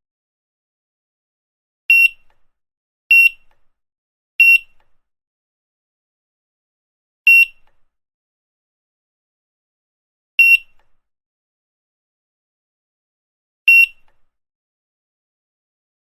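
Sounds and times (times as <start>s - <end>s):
barcode scanner beeping: 1.9s - 2.2s, 3.1s - 3.5s, 4.4s - 4.8s, 7.3s - 7.7s, 10.4s - 10.8s, 13.7s - 14.1s.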